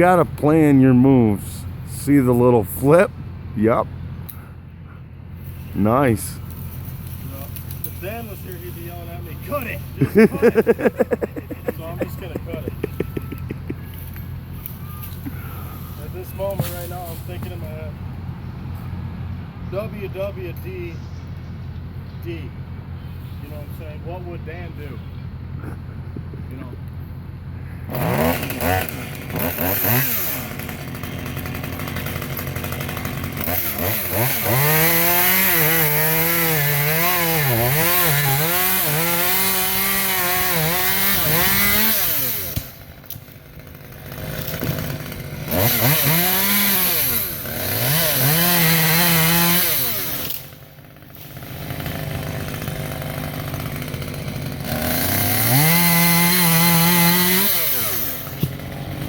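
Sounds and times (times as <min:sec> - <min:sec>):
chainsaw cutting wood: 0:06.4 - 0:17.7, 0:27.9 - 0:59.0.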